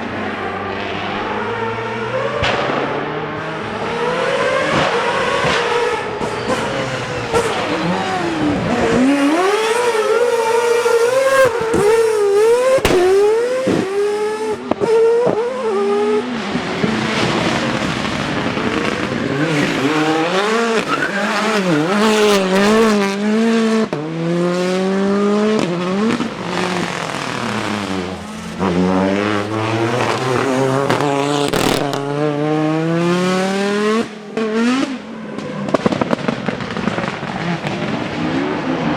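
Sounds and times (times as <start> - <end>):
rally car engine revving: 0.0 - 38.9
sharp cracks: 12.6 - 13.9
tyres sliding: 18.7 - 23.0.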